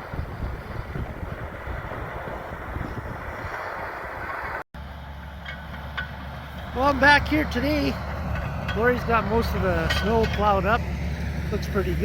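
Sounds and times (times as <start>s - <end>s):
wind buffeting microphone: 0.0s - 4.6s
bulldozer diesel engine running: 0.0s - 12.0s
low engine hum: 0.0s - 12.0s.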